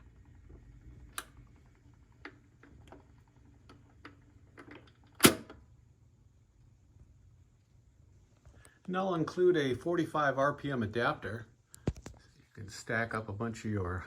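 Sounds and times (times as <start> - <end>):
record changer clicks: 1.0 - 5.6.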